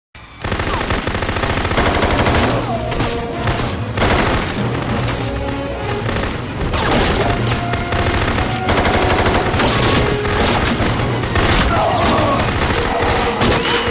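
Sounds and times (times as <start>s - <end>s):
film score music: 0.2s - 13.9s.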